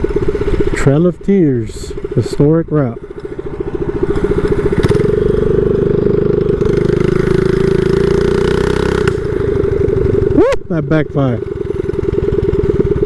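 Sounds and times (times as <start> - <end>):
small motorbike engine revving: 0.0 - 1.3, 1.9 - 13.0.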